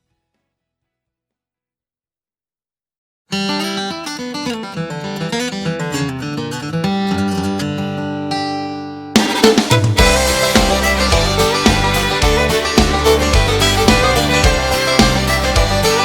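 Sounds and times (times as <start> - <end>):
picked acoustic guitar melody: 3.3 - 16.0
full band playing: 9.2 - 16.0.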